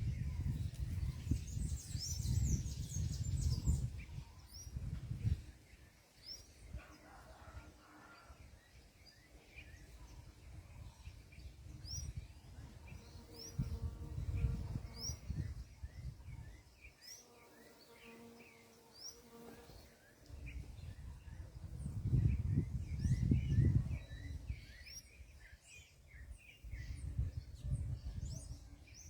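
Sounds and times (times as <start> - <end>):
low rumble on microphone: 0.0 - 5.6, 20.3 - 24.8, 26.1 - 29.0
small birds chirping: 0.0 - 7.2, 8.2 - 29.0.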